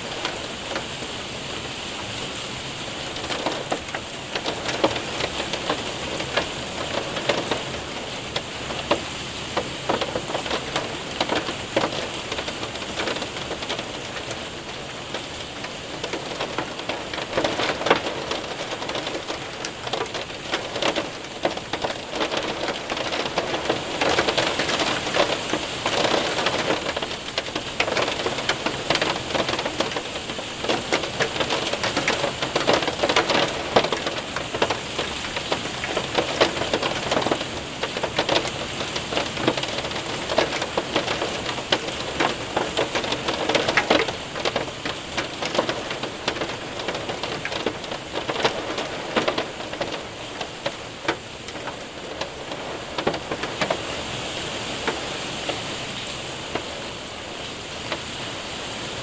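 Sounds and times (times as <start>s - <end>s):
hail and rain on window and roof: 0.0s - 59.0s.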